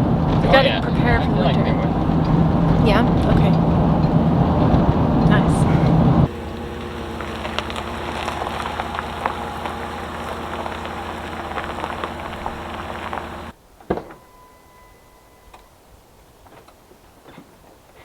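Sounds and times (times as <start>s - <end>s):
van engine running: 0.0s - 13.6s
tyres crackling on road: 0.0s - 14.0s
faint steady tone: 5.4s - 16.2s.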